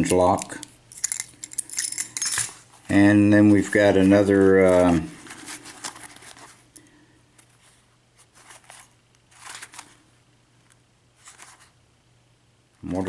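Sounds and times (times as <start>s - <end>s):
small locks clicking and rustling: 0.0s - 2.6s.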